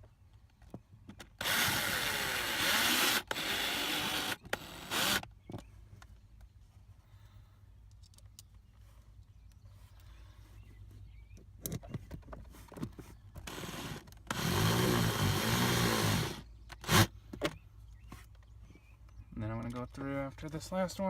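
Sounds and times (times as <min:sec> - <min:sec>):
drill driving screw: 0:01.4 - 0:05.3, 0:13.4 - 0:17.1.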